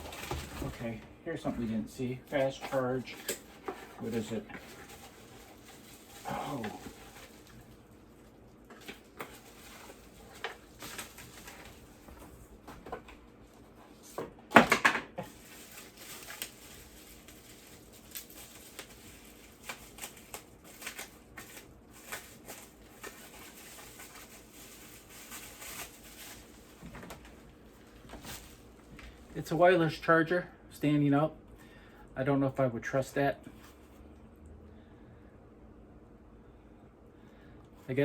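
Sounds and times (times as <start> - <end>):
packaging clicking and rustling: 0.0 - 0.9, 2.3 - 7.8, 8.6 - 13.2, 14.5 - 29.2.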